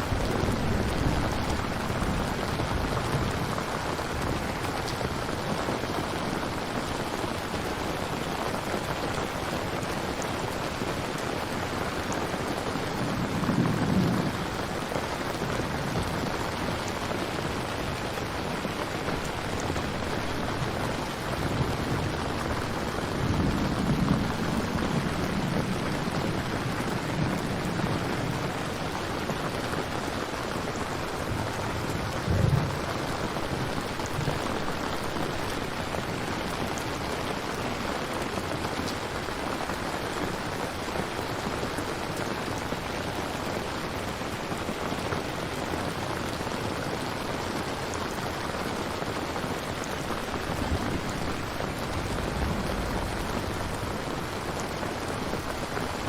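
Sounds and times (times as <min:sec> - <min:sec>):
thunder rumbling: 0:00.0 - 0:05.9, 0:12.8 - 0:36.4, 0:50.1 - 0:56.0
heavy rain falling: 0:00.0 - 0:56.0.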